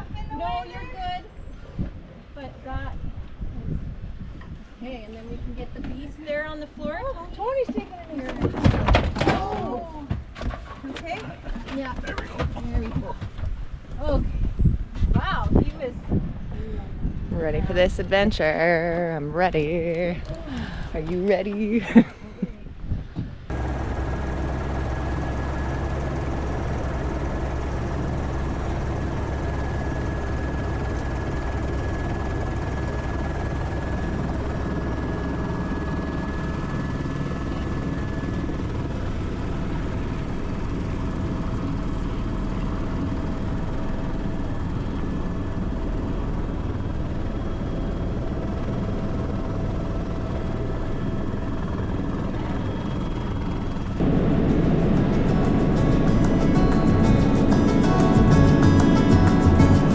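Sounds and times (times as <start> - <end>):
helicopter rotor and engine drone: 0.0 - 3.4, 4.3 - 13.4, 15.2 - 22.1, 23.5 - 59.9
high steady whine: 23.5 - 48.7, 52.8 - 59.9.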